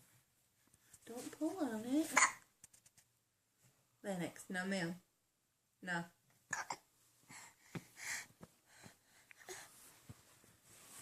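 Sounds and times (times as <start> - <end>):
child puffing breath: 7.3 - 9.8.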